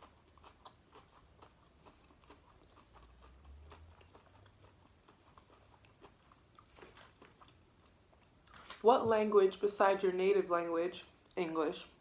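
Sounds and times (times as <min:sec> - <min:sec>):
food being chewed: 0:00.0 - 0:08.8.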